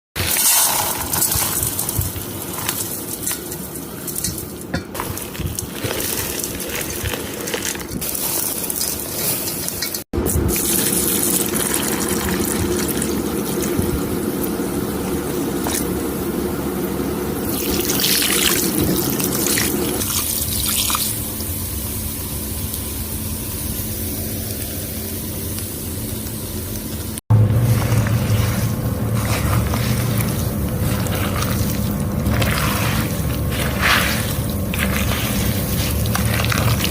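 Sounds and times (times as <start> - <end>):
wet paste sloshing and squelching: 4.9 - 10.0, 27.4 - 36.9.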